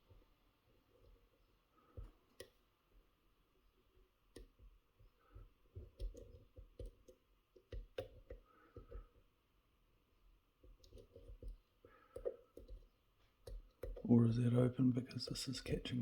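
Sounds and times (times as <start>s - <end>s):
lock pick clicks and taps: 4.3s - 4.7s, 5.4s - 9.1s, 10.6s - 14.0s.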